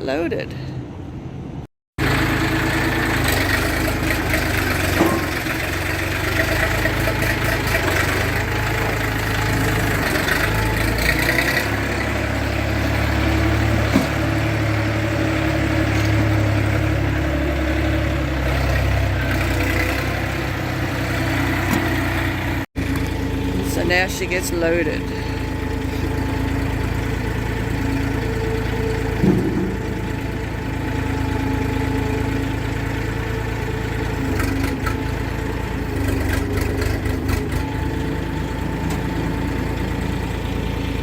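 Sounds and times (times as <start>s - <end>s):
engine idling: 2.0s - 41.0s.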